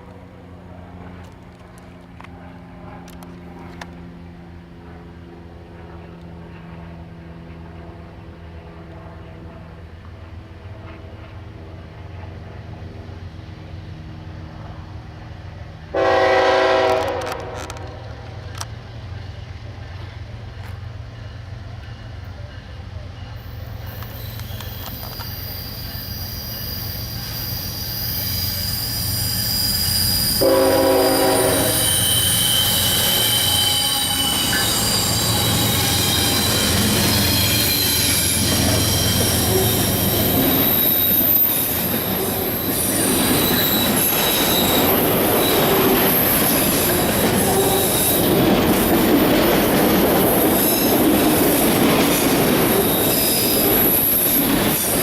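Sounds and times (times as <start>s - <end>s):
diesel locomotive rumble: 0.0s - 55.0s
train horn blast: 15.9s - 18.2s, 30.3s - 40.6s
train wheel squeal: 16.1s - 55.0s
rail clatter: 29.8s - 55.0s.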